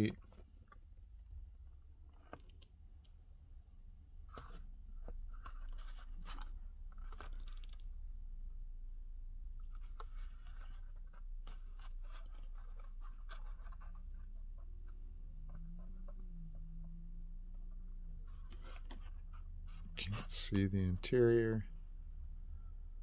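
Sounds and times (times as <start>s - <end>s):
steady low hum: 7.8s - 23.0s.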